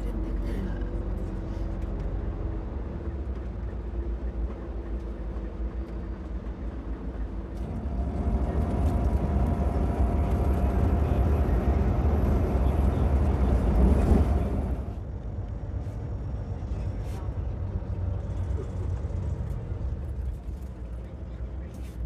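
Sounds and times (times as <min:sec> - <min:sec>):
bus engine and road rumble: 0:00.0 - 0:22.0.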